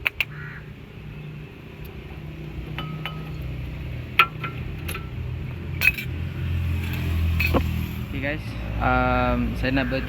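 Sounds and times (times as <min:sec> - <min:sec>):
metal brake parts clinking: 0:01.8 - 0:08.0.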